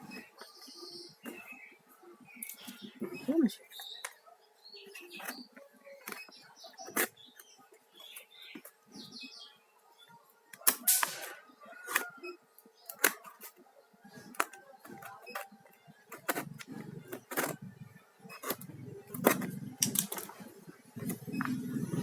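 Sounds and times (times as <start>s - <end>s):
clicks of small hard objects: 19.2s - 20.4s.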